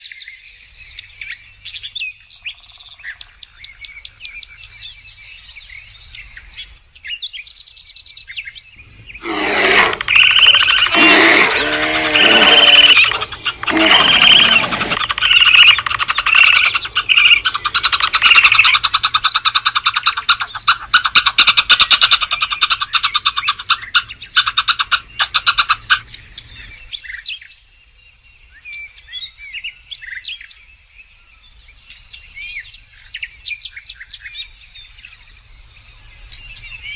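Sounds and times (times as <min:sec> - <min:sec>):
high chirping calls: 0:08.2 - 0:27.2
animal clicking chirps: 0:09.2 - 0:26.1.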